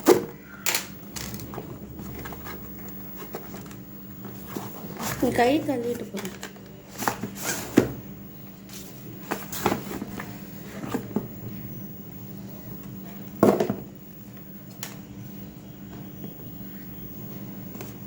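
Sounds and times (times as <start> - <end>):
objects knocking and clattering: 13.4 - 13.9.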